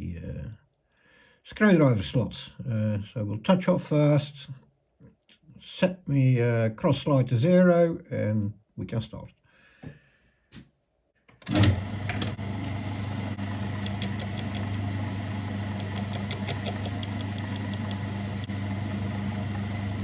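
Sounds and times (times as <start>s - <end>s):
electric motor humming: 11.5s - 20.0s.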